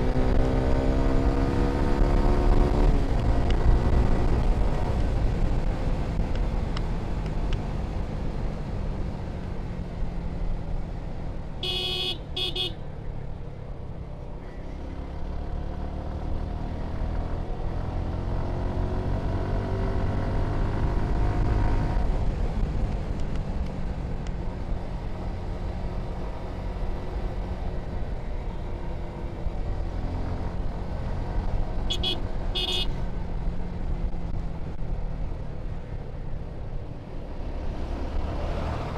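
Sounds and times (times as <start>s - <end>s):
horn honking: 11.6s - 12.8s, 31.9s - 33.0s.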